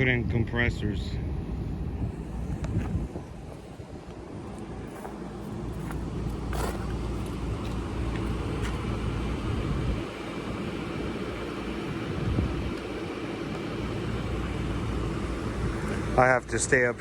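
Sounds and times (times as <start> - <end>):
crane engine rumbling: 0.0 - 17.0.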